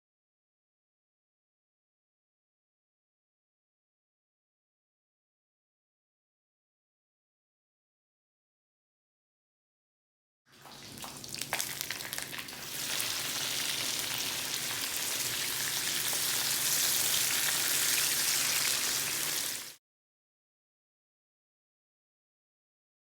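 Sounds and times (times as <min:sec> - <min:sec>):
food sizzling in a wok: 0:11.2 - 0:19.8.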